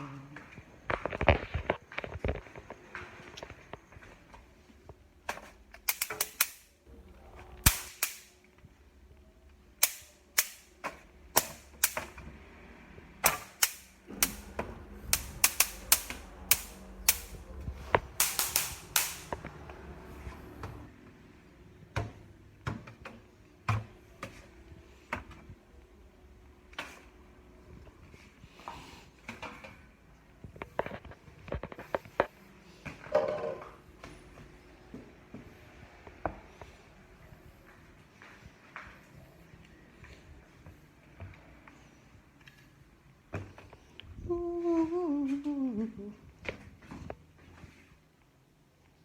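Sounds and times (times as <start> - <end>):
sharp irregular clicks and knocks: 5.3 - 6.6, 13.2 - 17.4.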